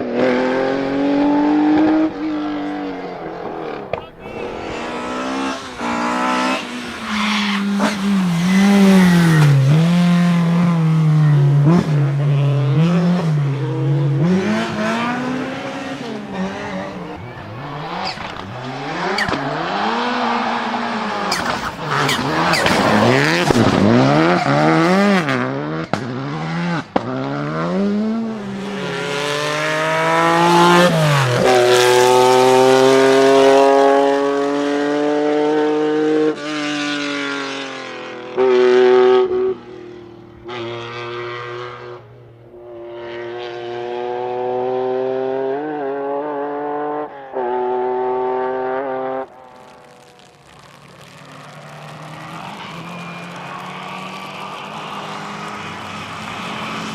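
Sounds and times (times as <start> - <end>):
rally car engines revving: 0.0 - 56.9
sharp cracks: 49.2 - 56.7
tyre and gravel noise: 49.2 - 56.9.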